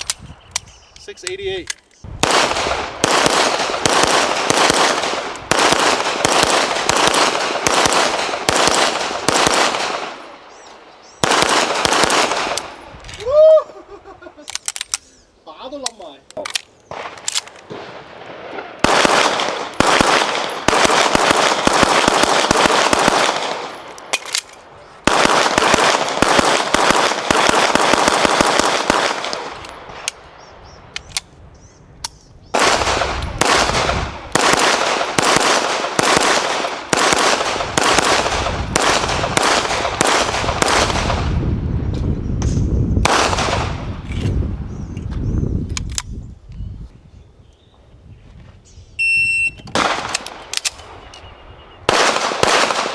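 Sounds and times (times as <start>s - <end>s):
pistol gunshots: 2.2s - 10.3s, 11.2s - 12.8s, 16.9s - 30.2s, 32.6s - 41.4s, 43.0s - 43.8s, 49.7s - 50.8s, 51.9s - 52.9s.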